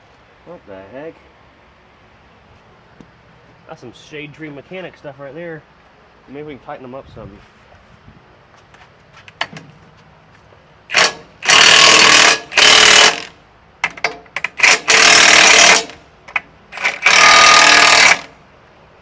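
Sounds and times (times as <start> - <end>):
impact wrench hammering: 10.9 - 18.3.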